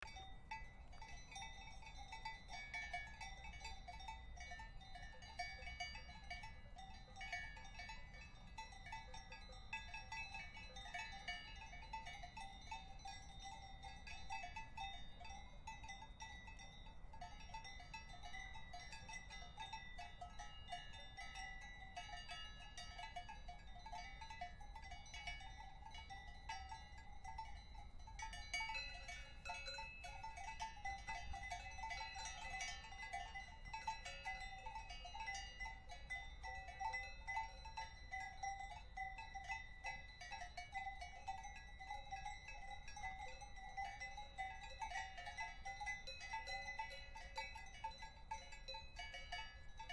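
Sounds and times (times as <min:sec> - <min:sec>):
cowbells clanking: 0:00.0 - 0:49.9.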